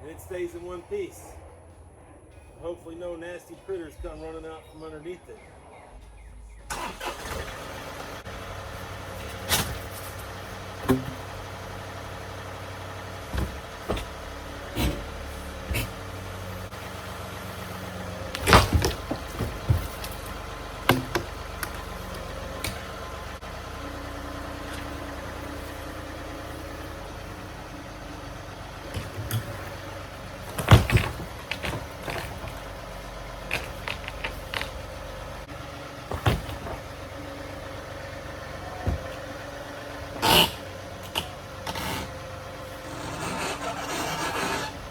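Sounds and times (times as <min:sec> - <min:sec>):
tractor engine running: 0:06.1 - 0:44.9
sharp knocks and clunks: 0:09.2 - 0:11.4, 0:13.2 - 0:16.1, 0:18.3 - 0:21.8, 0:30.4 - 0:32.7, 0:36.1 - 0:36.9, 0:38.8 - 0:39.3.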